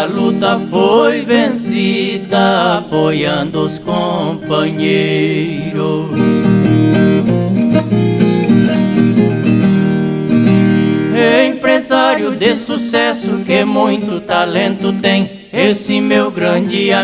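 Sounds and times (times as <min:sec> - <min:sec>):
person singing: 0:00.0 - 0:06.7, 0:11.1 - 0:17.0
strummed acoustic guitars: 0:00.0 - 0:17.0.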